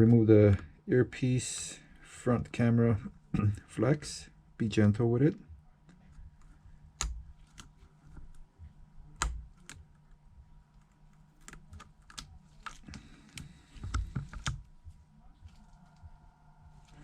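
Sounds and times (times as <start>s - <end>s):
faint steady low hum: 0.0s - 17.0s.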